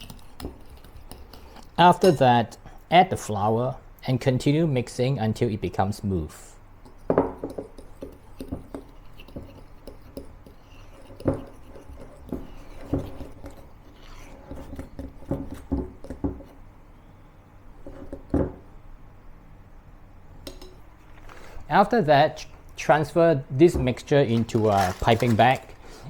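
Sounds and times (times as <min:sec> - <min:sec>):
utensil stirring thick batter: 0:00.0 - 0:02.3, 0:06.8 - 0:16.6, 0:23.8 - 0:25.8
utensil knocking against bowl: 0:07.1 - 0:11.5.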